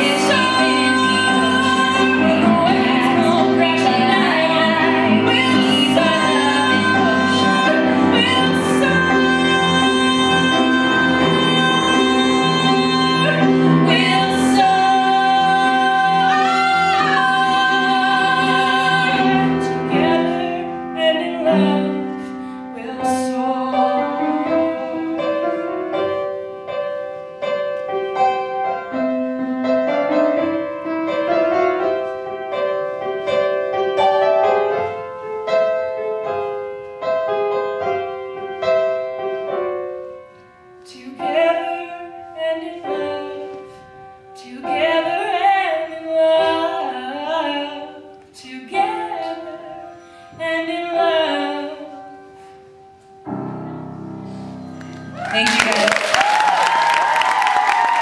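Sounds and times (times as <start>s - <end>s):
women singing: 0.0s - 25.2s.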